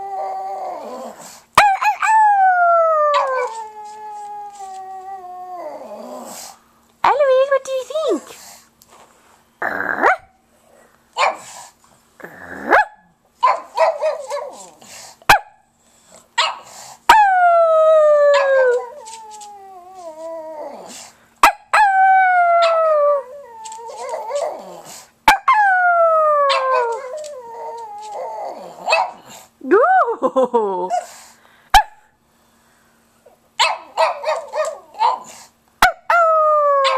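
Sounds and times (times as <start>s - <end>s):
dog howling: 0.0s - 6.4s, 17.1s - 21.0s, 21.7s - 29.2s, 36.0s - 36.9s
dog barking and yipping: 11.2s - 11.6s, 12.7s - 14.7s, 16.4s - 16.7s, 28.8s - 29.3s, 33.6s - 36.1s.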